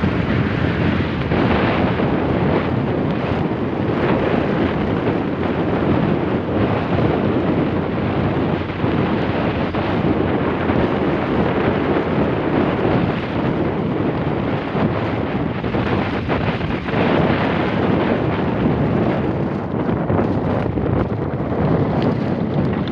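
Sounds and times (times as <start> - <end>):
wind buffeting microphone: 0.0 - 22.9.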